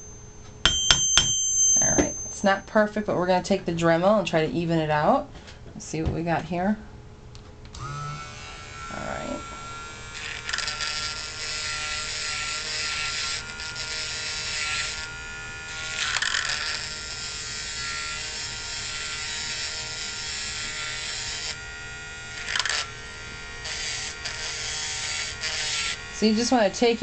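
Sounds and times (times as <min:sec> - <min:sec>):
rotary tool whining: 0:07.7 - 0:27.0
bit grinding on copper wire: 0:07.8 - 0:21.6.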